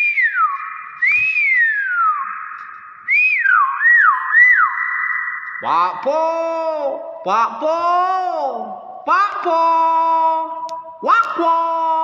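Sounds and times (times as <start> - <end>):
myna whistling: 0.0 - 5.9.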